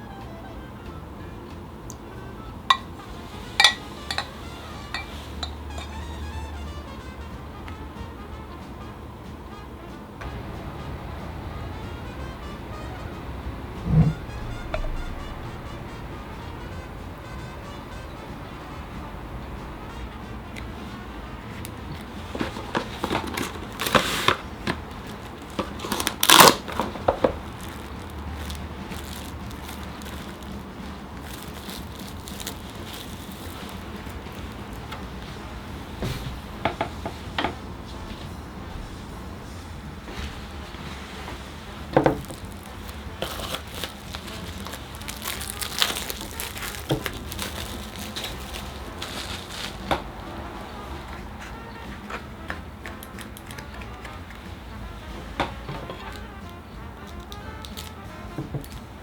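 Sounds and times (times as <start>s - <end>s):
rustling or scraping: 2.7s - 6.2s, 13.8s - 16.7s, 20.5s - 52.3s, 53.0s - 58.9s
packaging crinkling: 21.5s - 35.4s, 41.4s - 50.5s, 52.8s - 54.3s, 55.7s - 58.9s.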